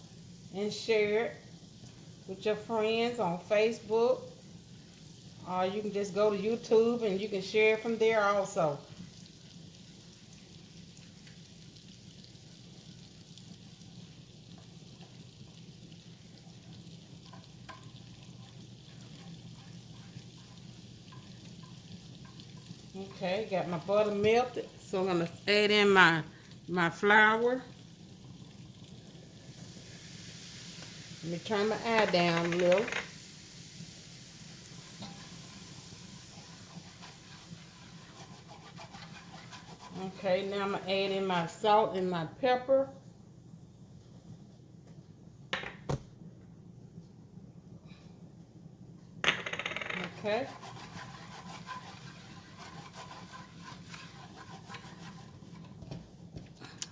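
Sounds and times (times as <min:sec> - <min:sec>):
butter sizzling in a saucepan: 0:00.0 - 0:43.1, 0:50.0 - 0:56.7
stirring scrapes and ticks: 0:17.2 - 0:23.6, 0:36.3 - 0:40.5, 0:50.1 - 0:56.0.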